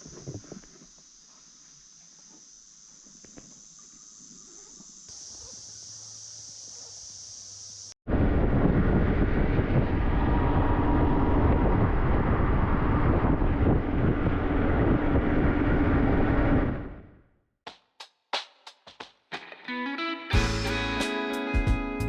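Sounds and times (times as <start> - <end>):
wind rush on microphone: 8.1 - 17.2
motorcycle engine running: 20.4 - 21.0.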